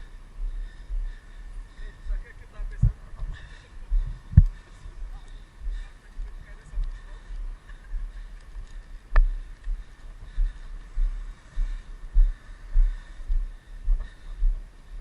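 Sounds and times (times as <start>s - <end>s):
muffled thumps on microphone: 2.7s - 3.4s.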